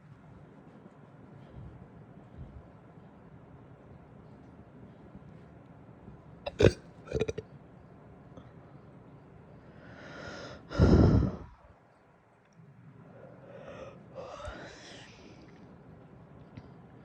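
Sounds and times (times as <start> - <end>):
person breathing heavily: 9.8 - 11.7, 13.1 - 15.5.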